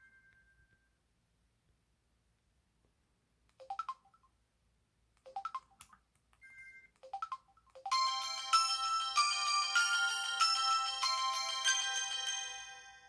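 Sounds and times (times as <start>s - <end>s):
polyphonic ringtone melody: 7.0s - 13.0s.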